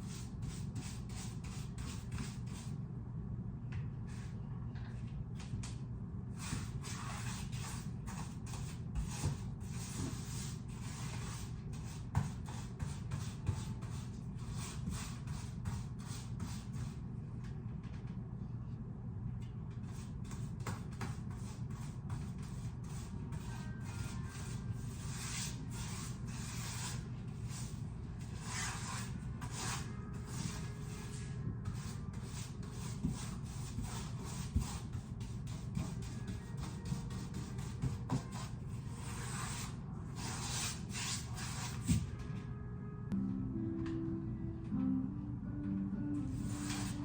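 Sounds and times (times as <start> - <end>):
low steady hum: 0.0 - 47.0
paint brush swishing on wall: 46.4 - 47.0.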